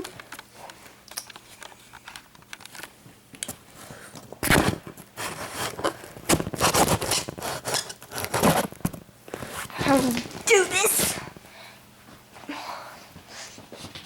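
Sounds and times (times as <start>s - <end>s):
packaging scraping and rustling: 4.4s - 10.5s.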